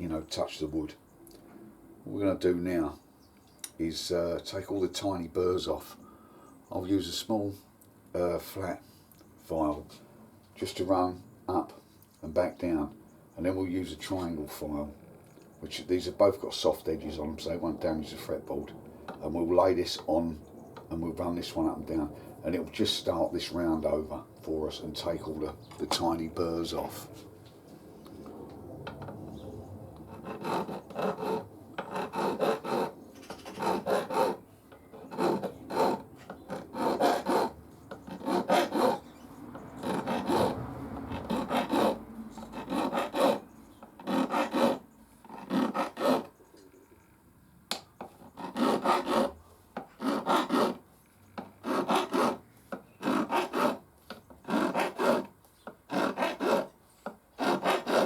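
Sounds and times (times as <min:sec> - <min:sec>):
file rasping on guitar frets: 0:30.1 - 0:32.9, 0:33.5 - 0:34.4, 0:35.0 - 0:39.0, 0:41.2 - 0:43.4, 0:44.0 - 0:46.3, 0:48.4 - 0:49.4, 0:51.6 - 0:52.4, 0:54.5 - 0:55.3, 0:55.9 - 0:56.7, 0:57.4 - 0:58.0.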